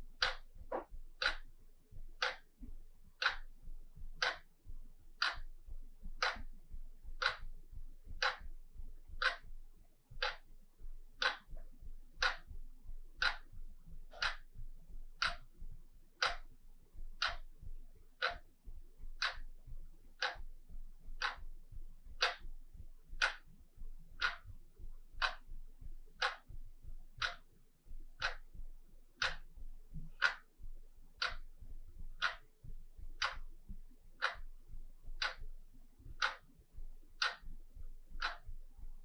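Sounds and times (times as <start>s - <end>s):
wall clock ticking: 0.0s - 39.0s.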